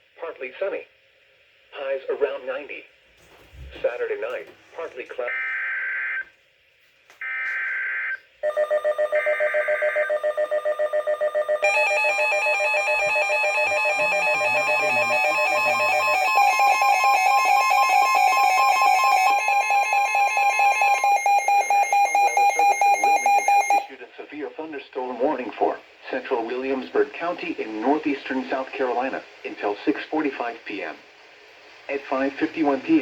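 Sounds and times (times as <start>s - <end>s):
rapid pulsing alarm beeps: 8.4s - 23.9s.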